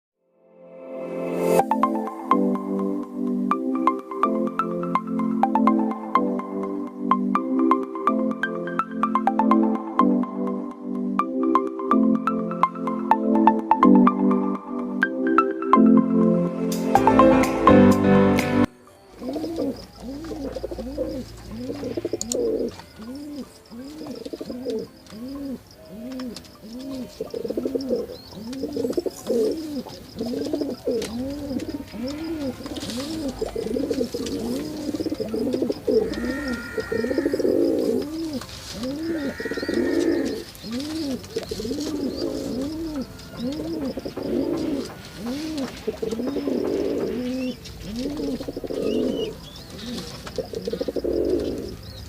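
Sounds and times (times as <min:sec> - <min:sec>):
pigeons cooing: 0:19.2 - 0:52.0.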